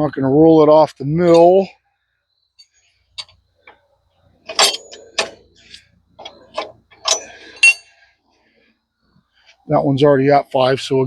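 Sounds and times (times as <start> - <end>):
sharp metal clanks and clicks: 2.6 - 3.8, 4.4 - 8.0.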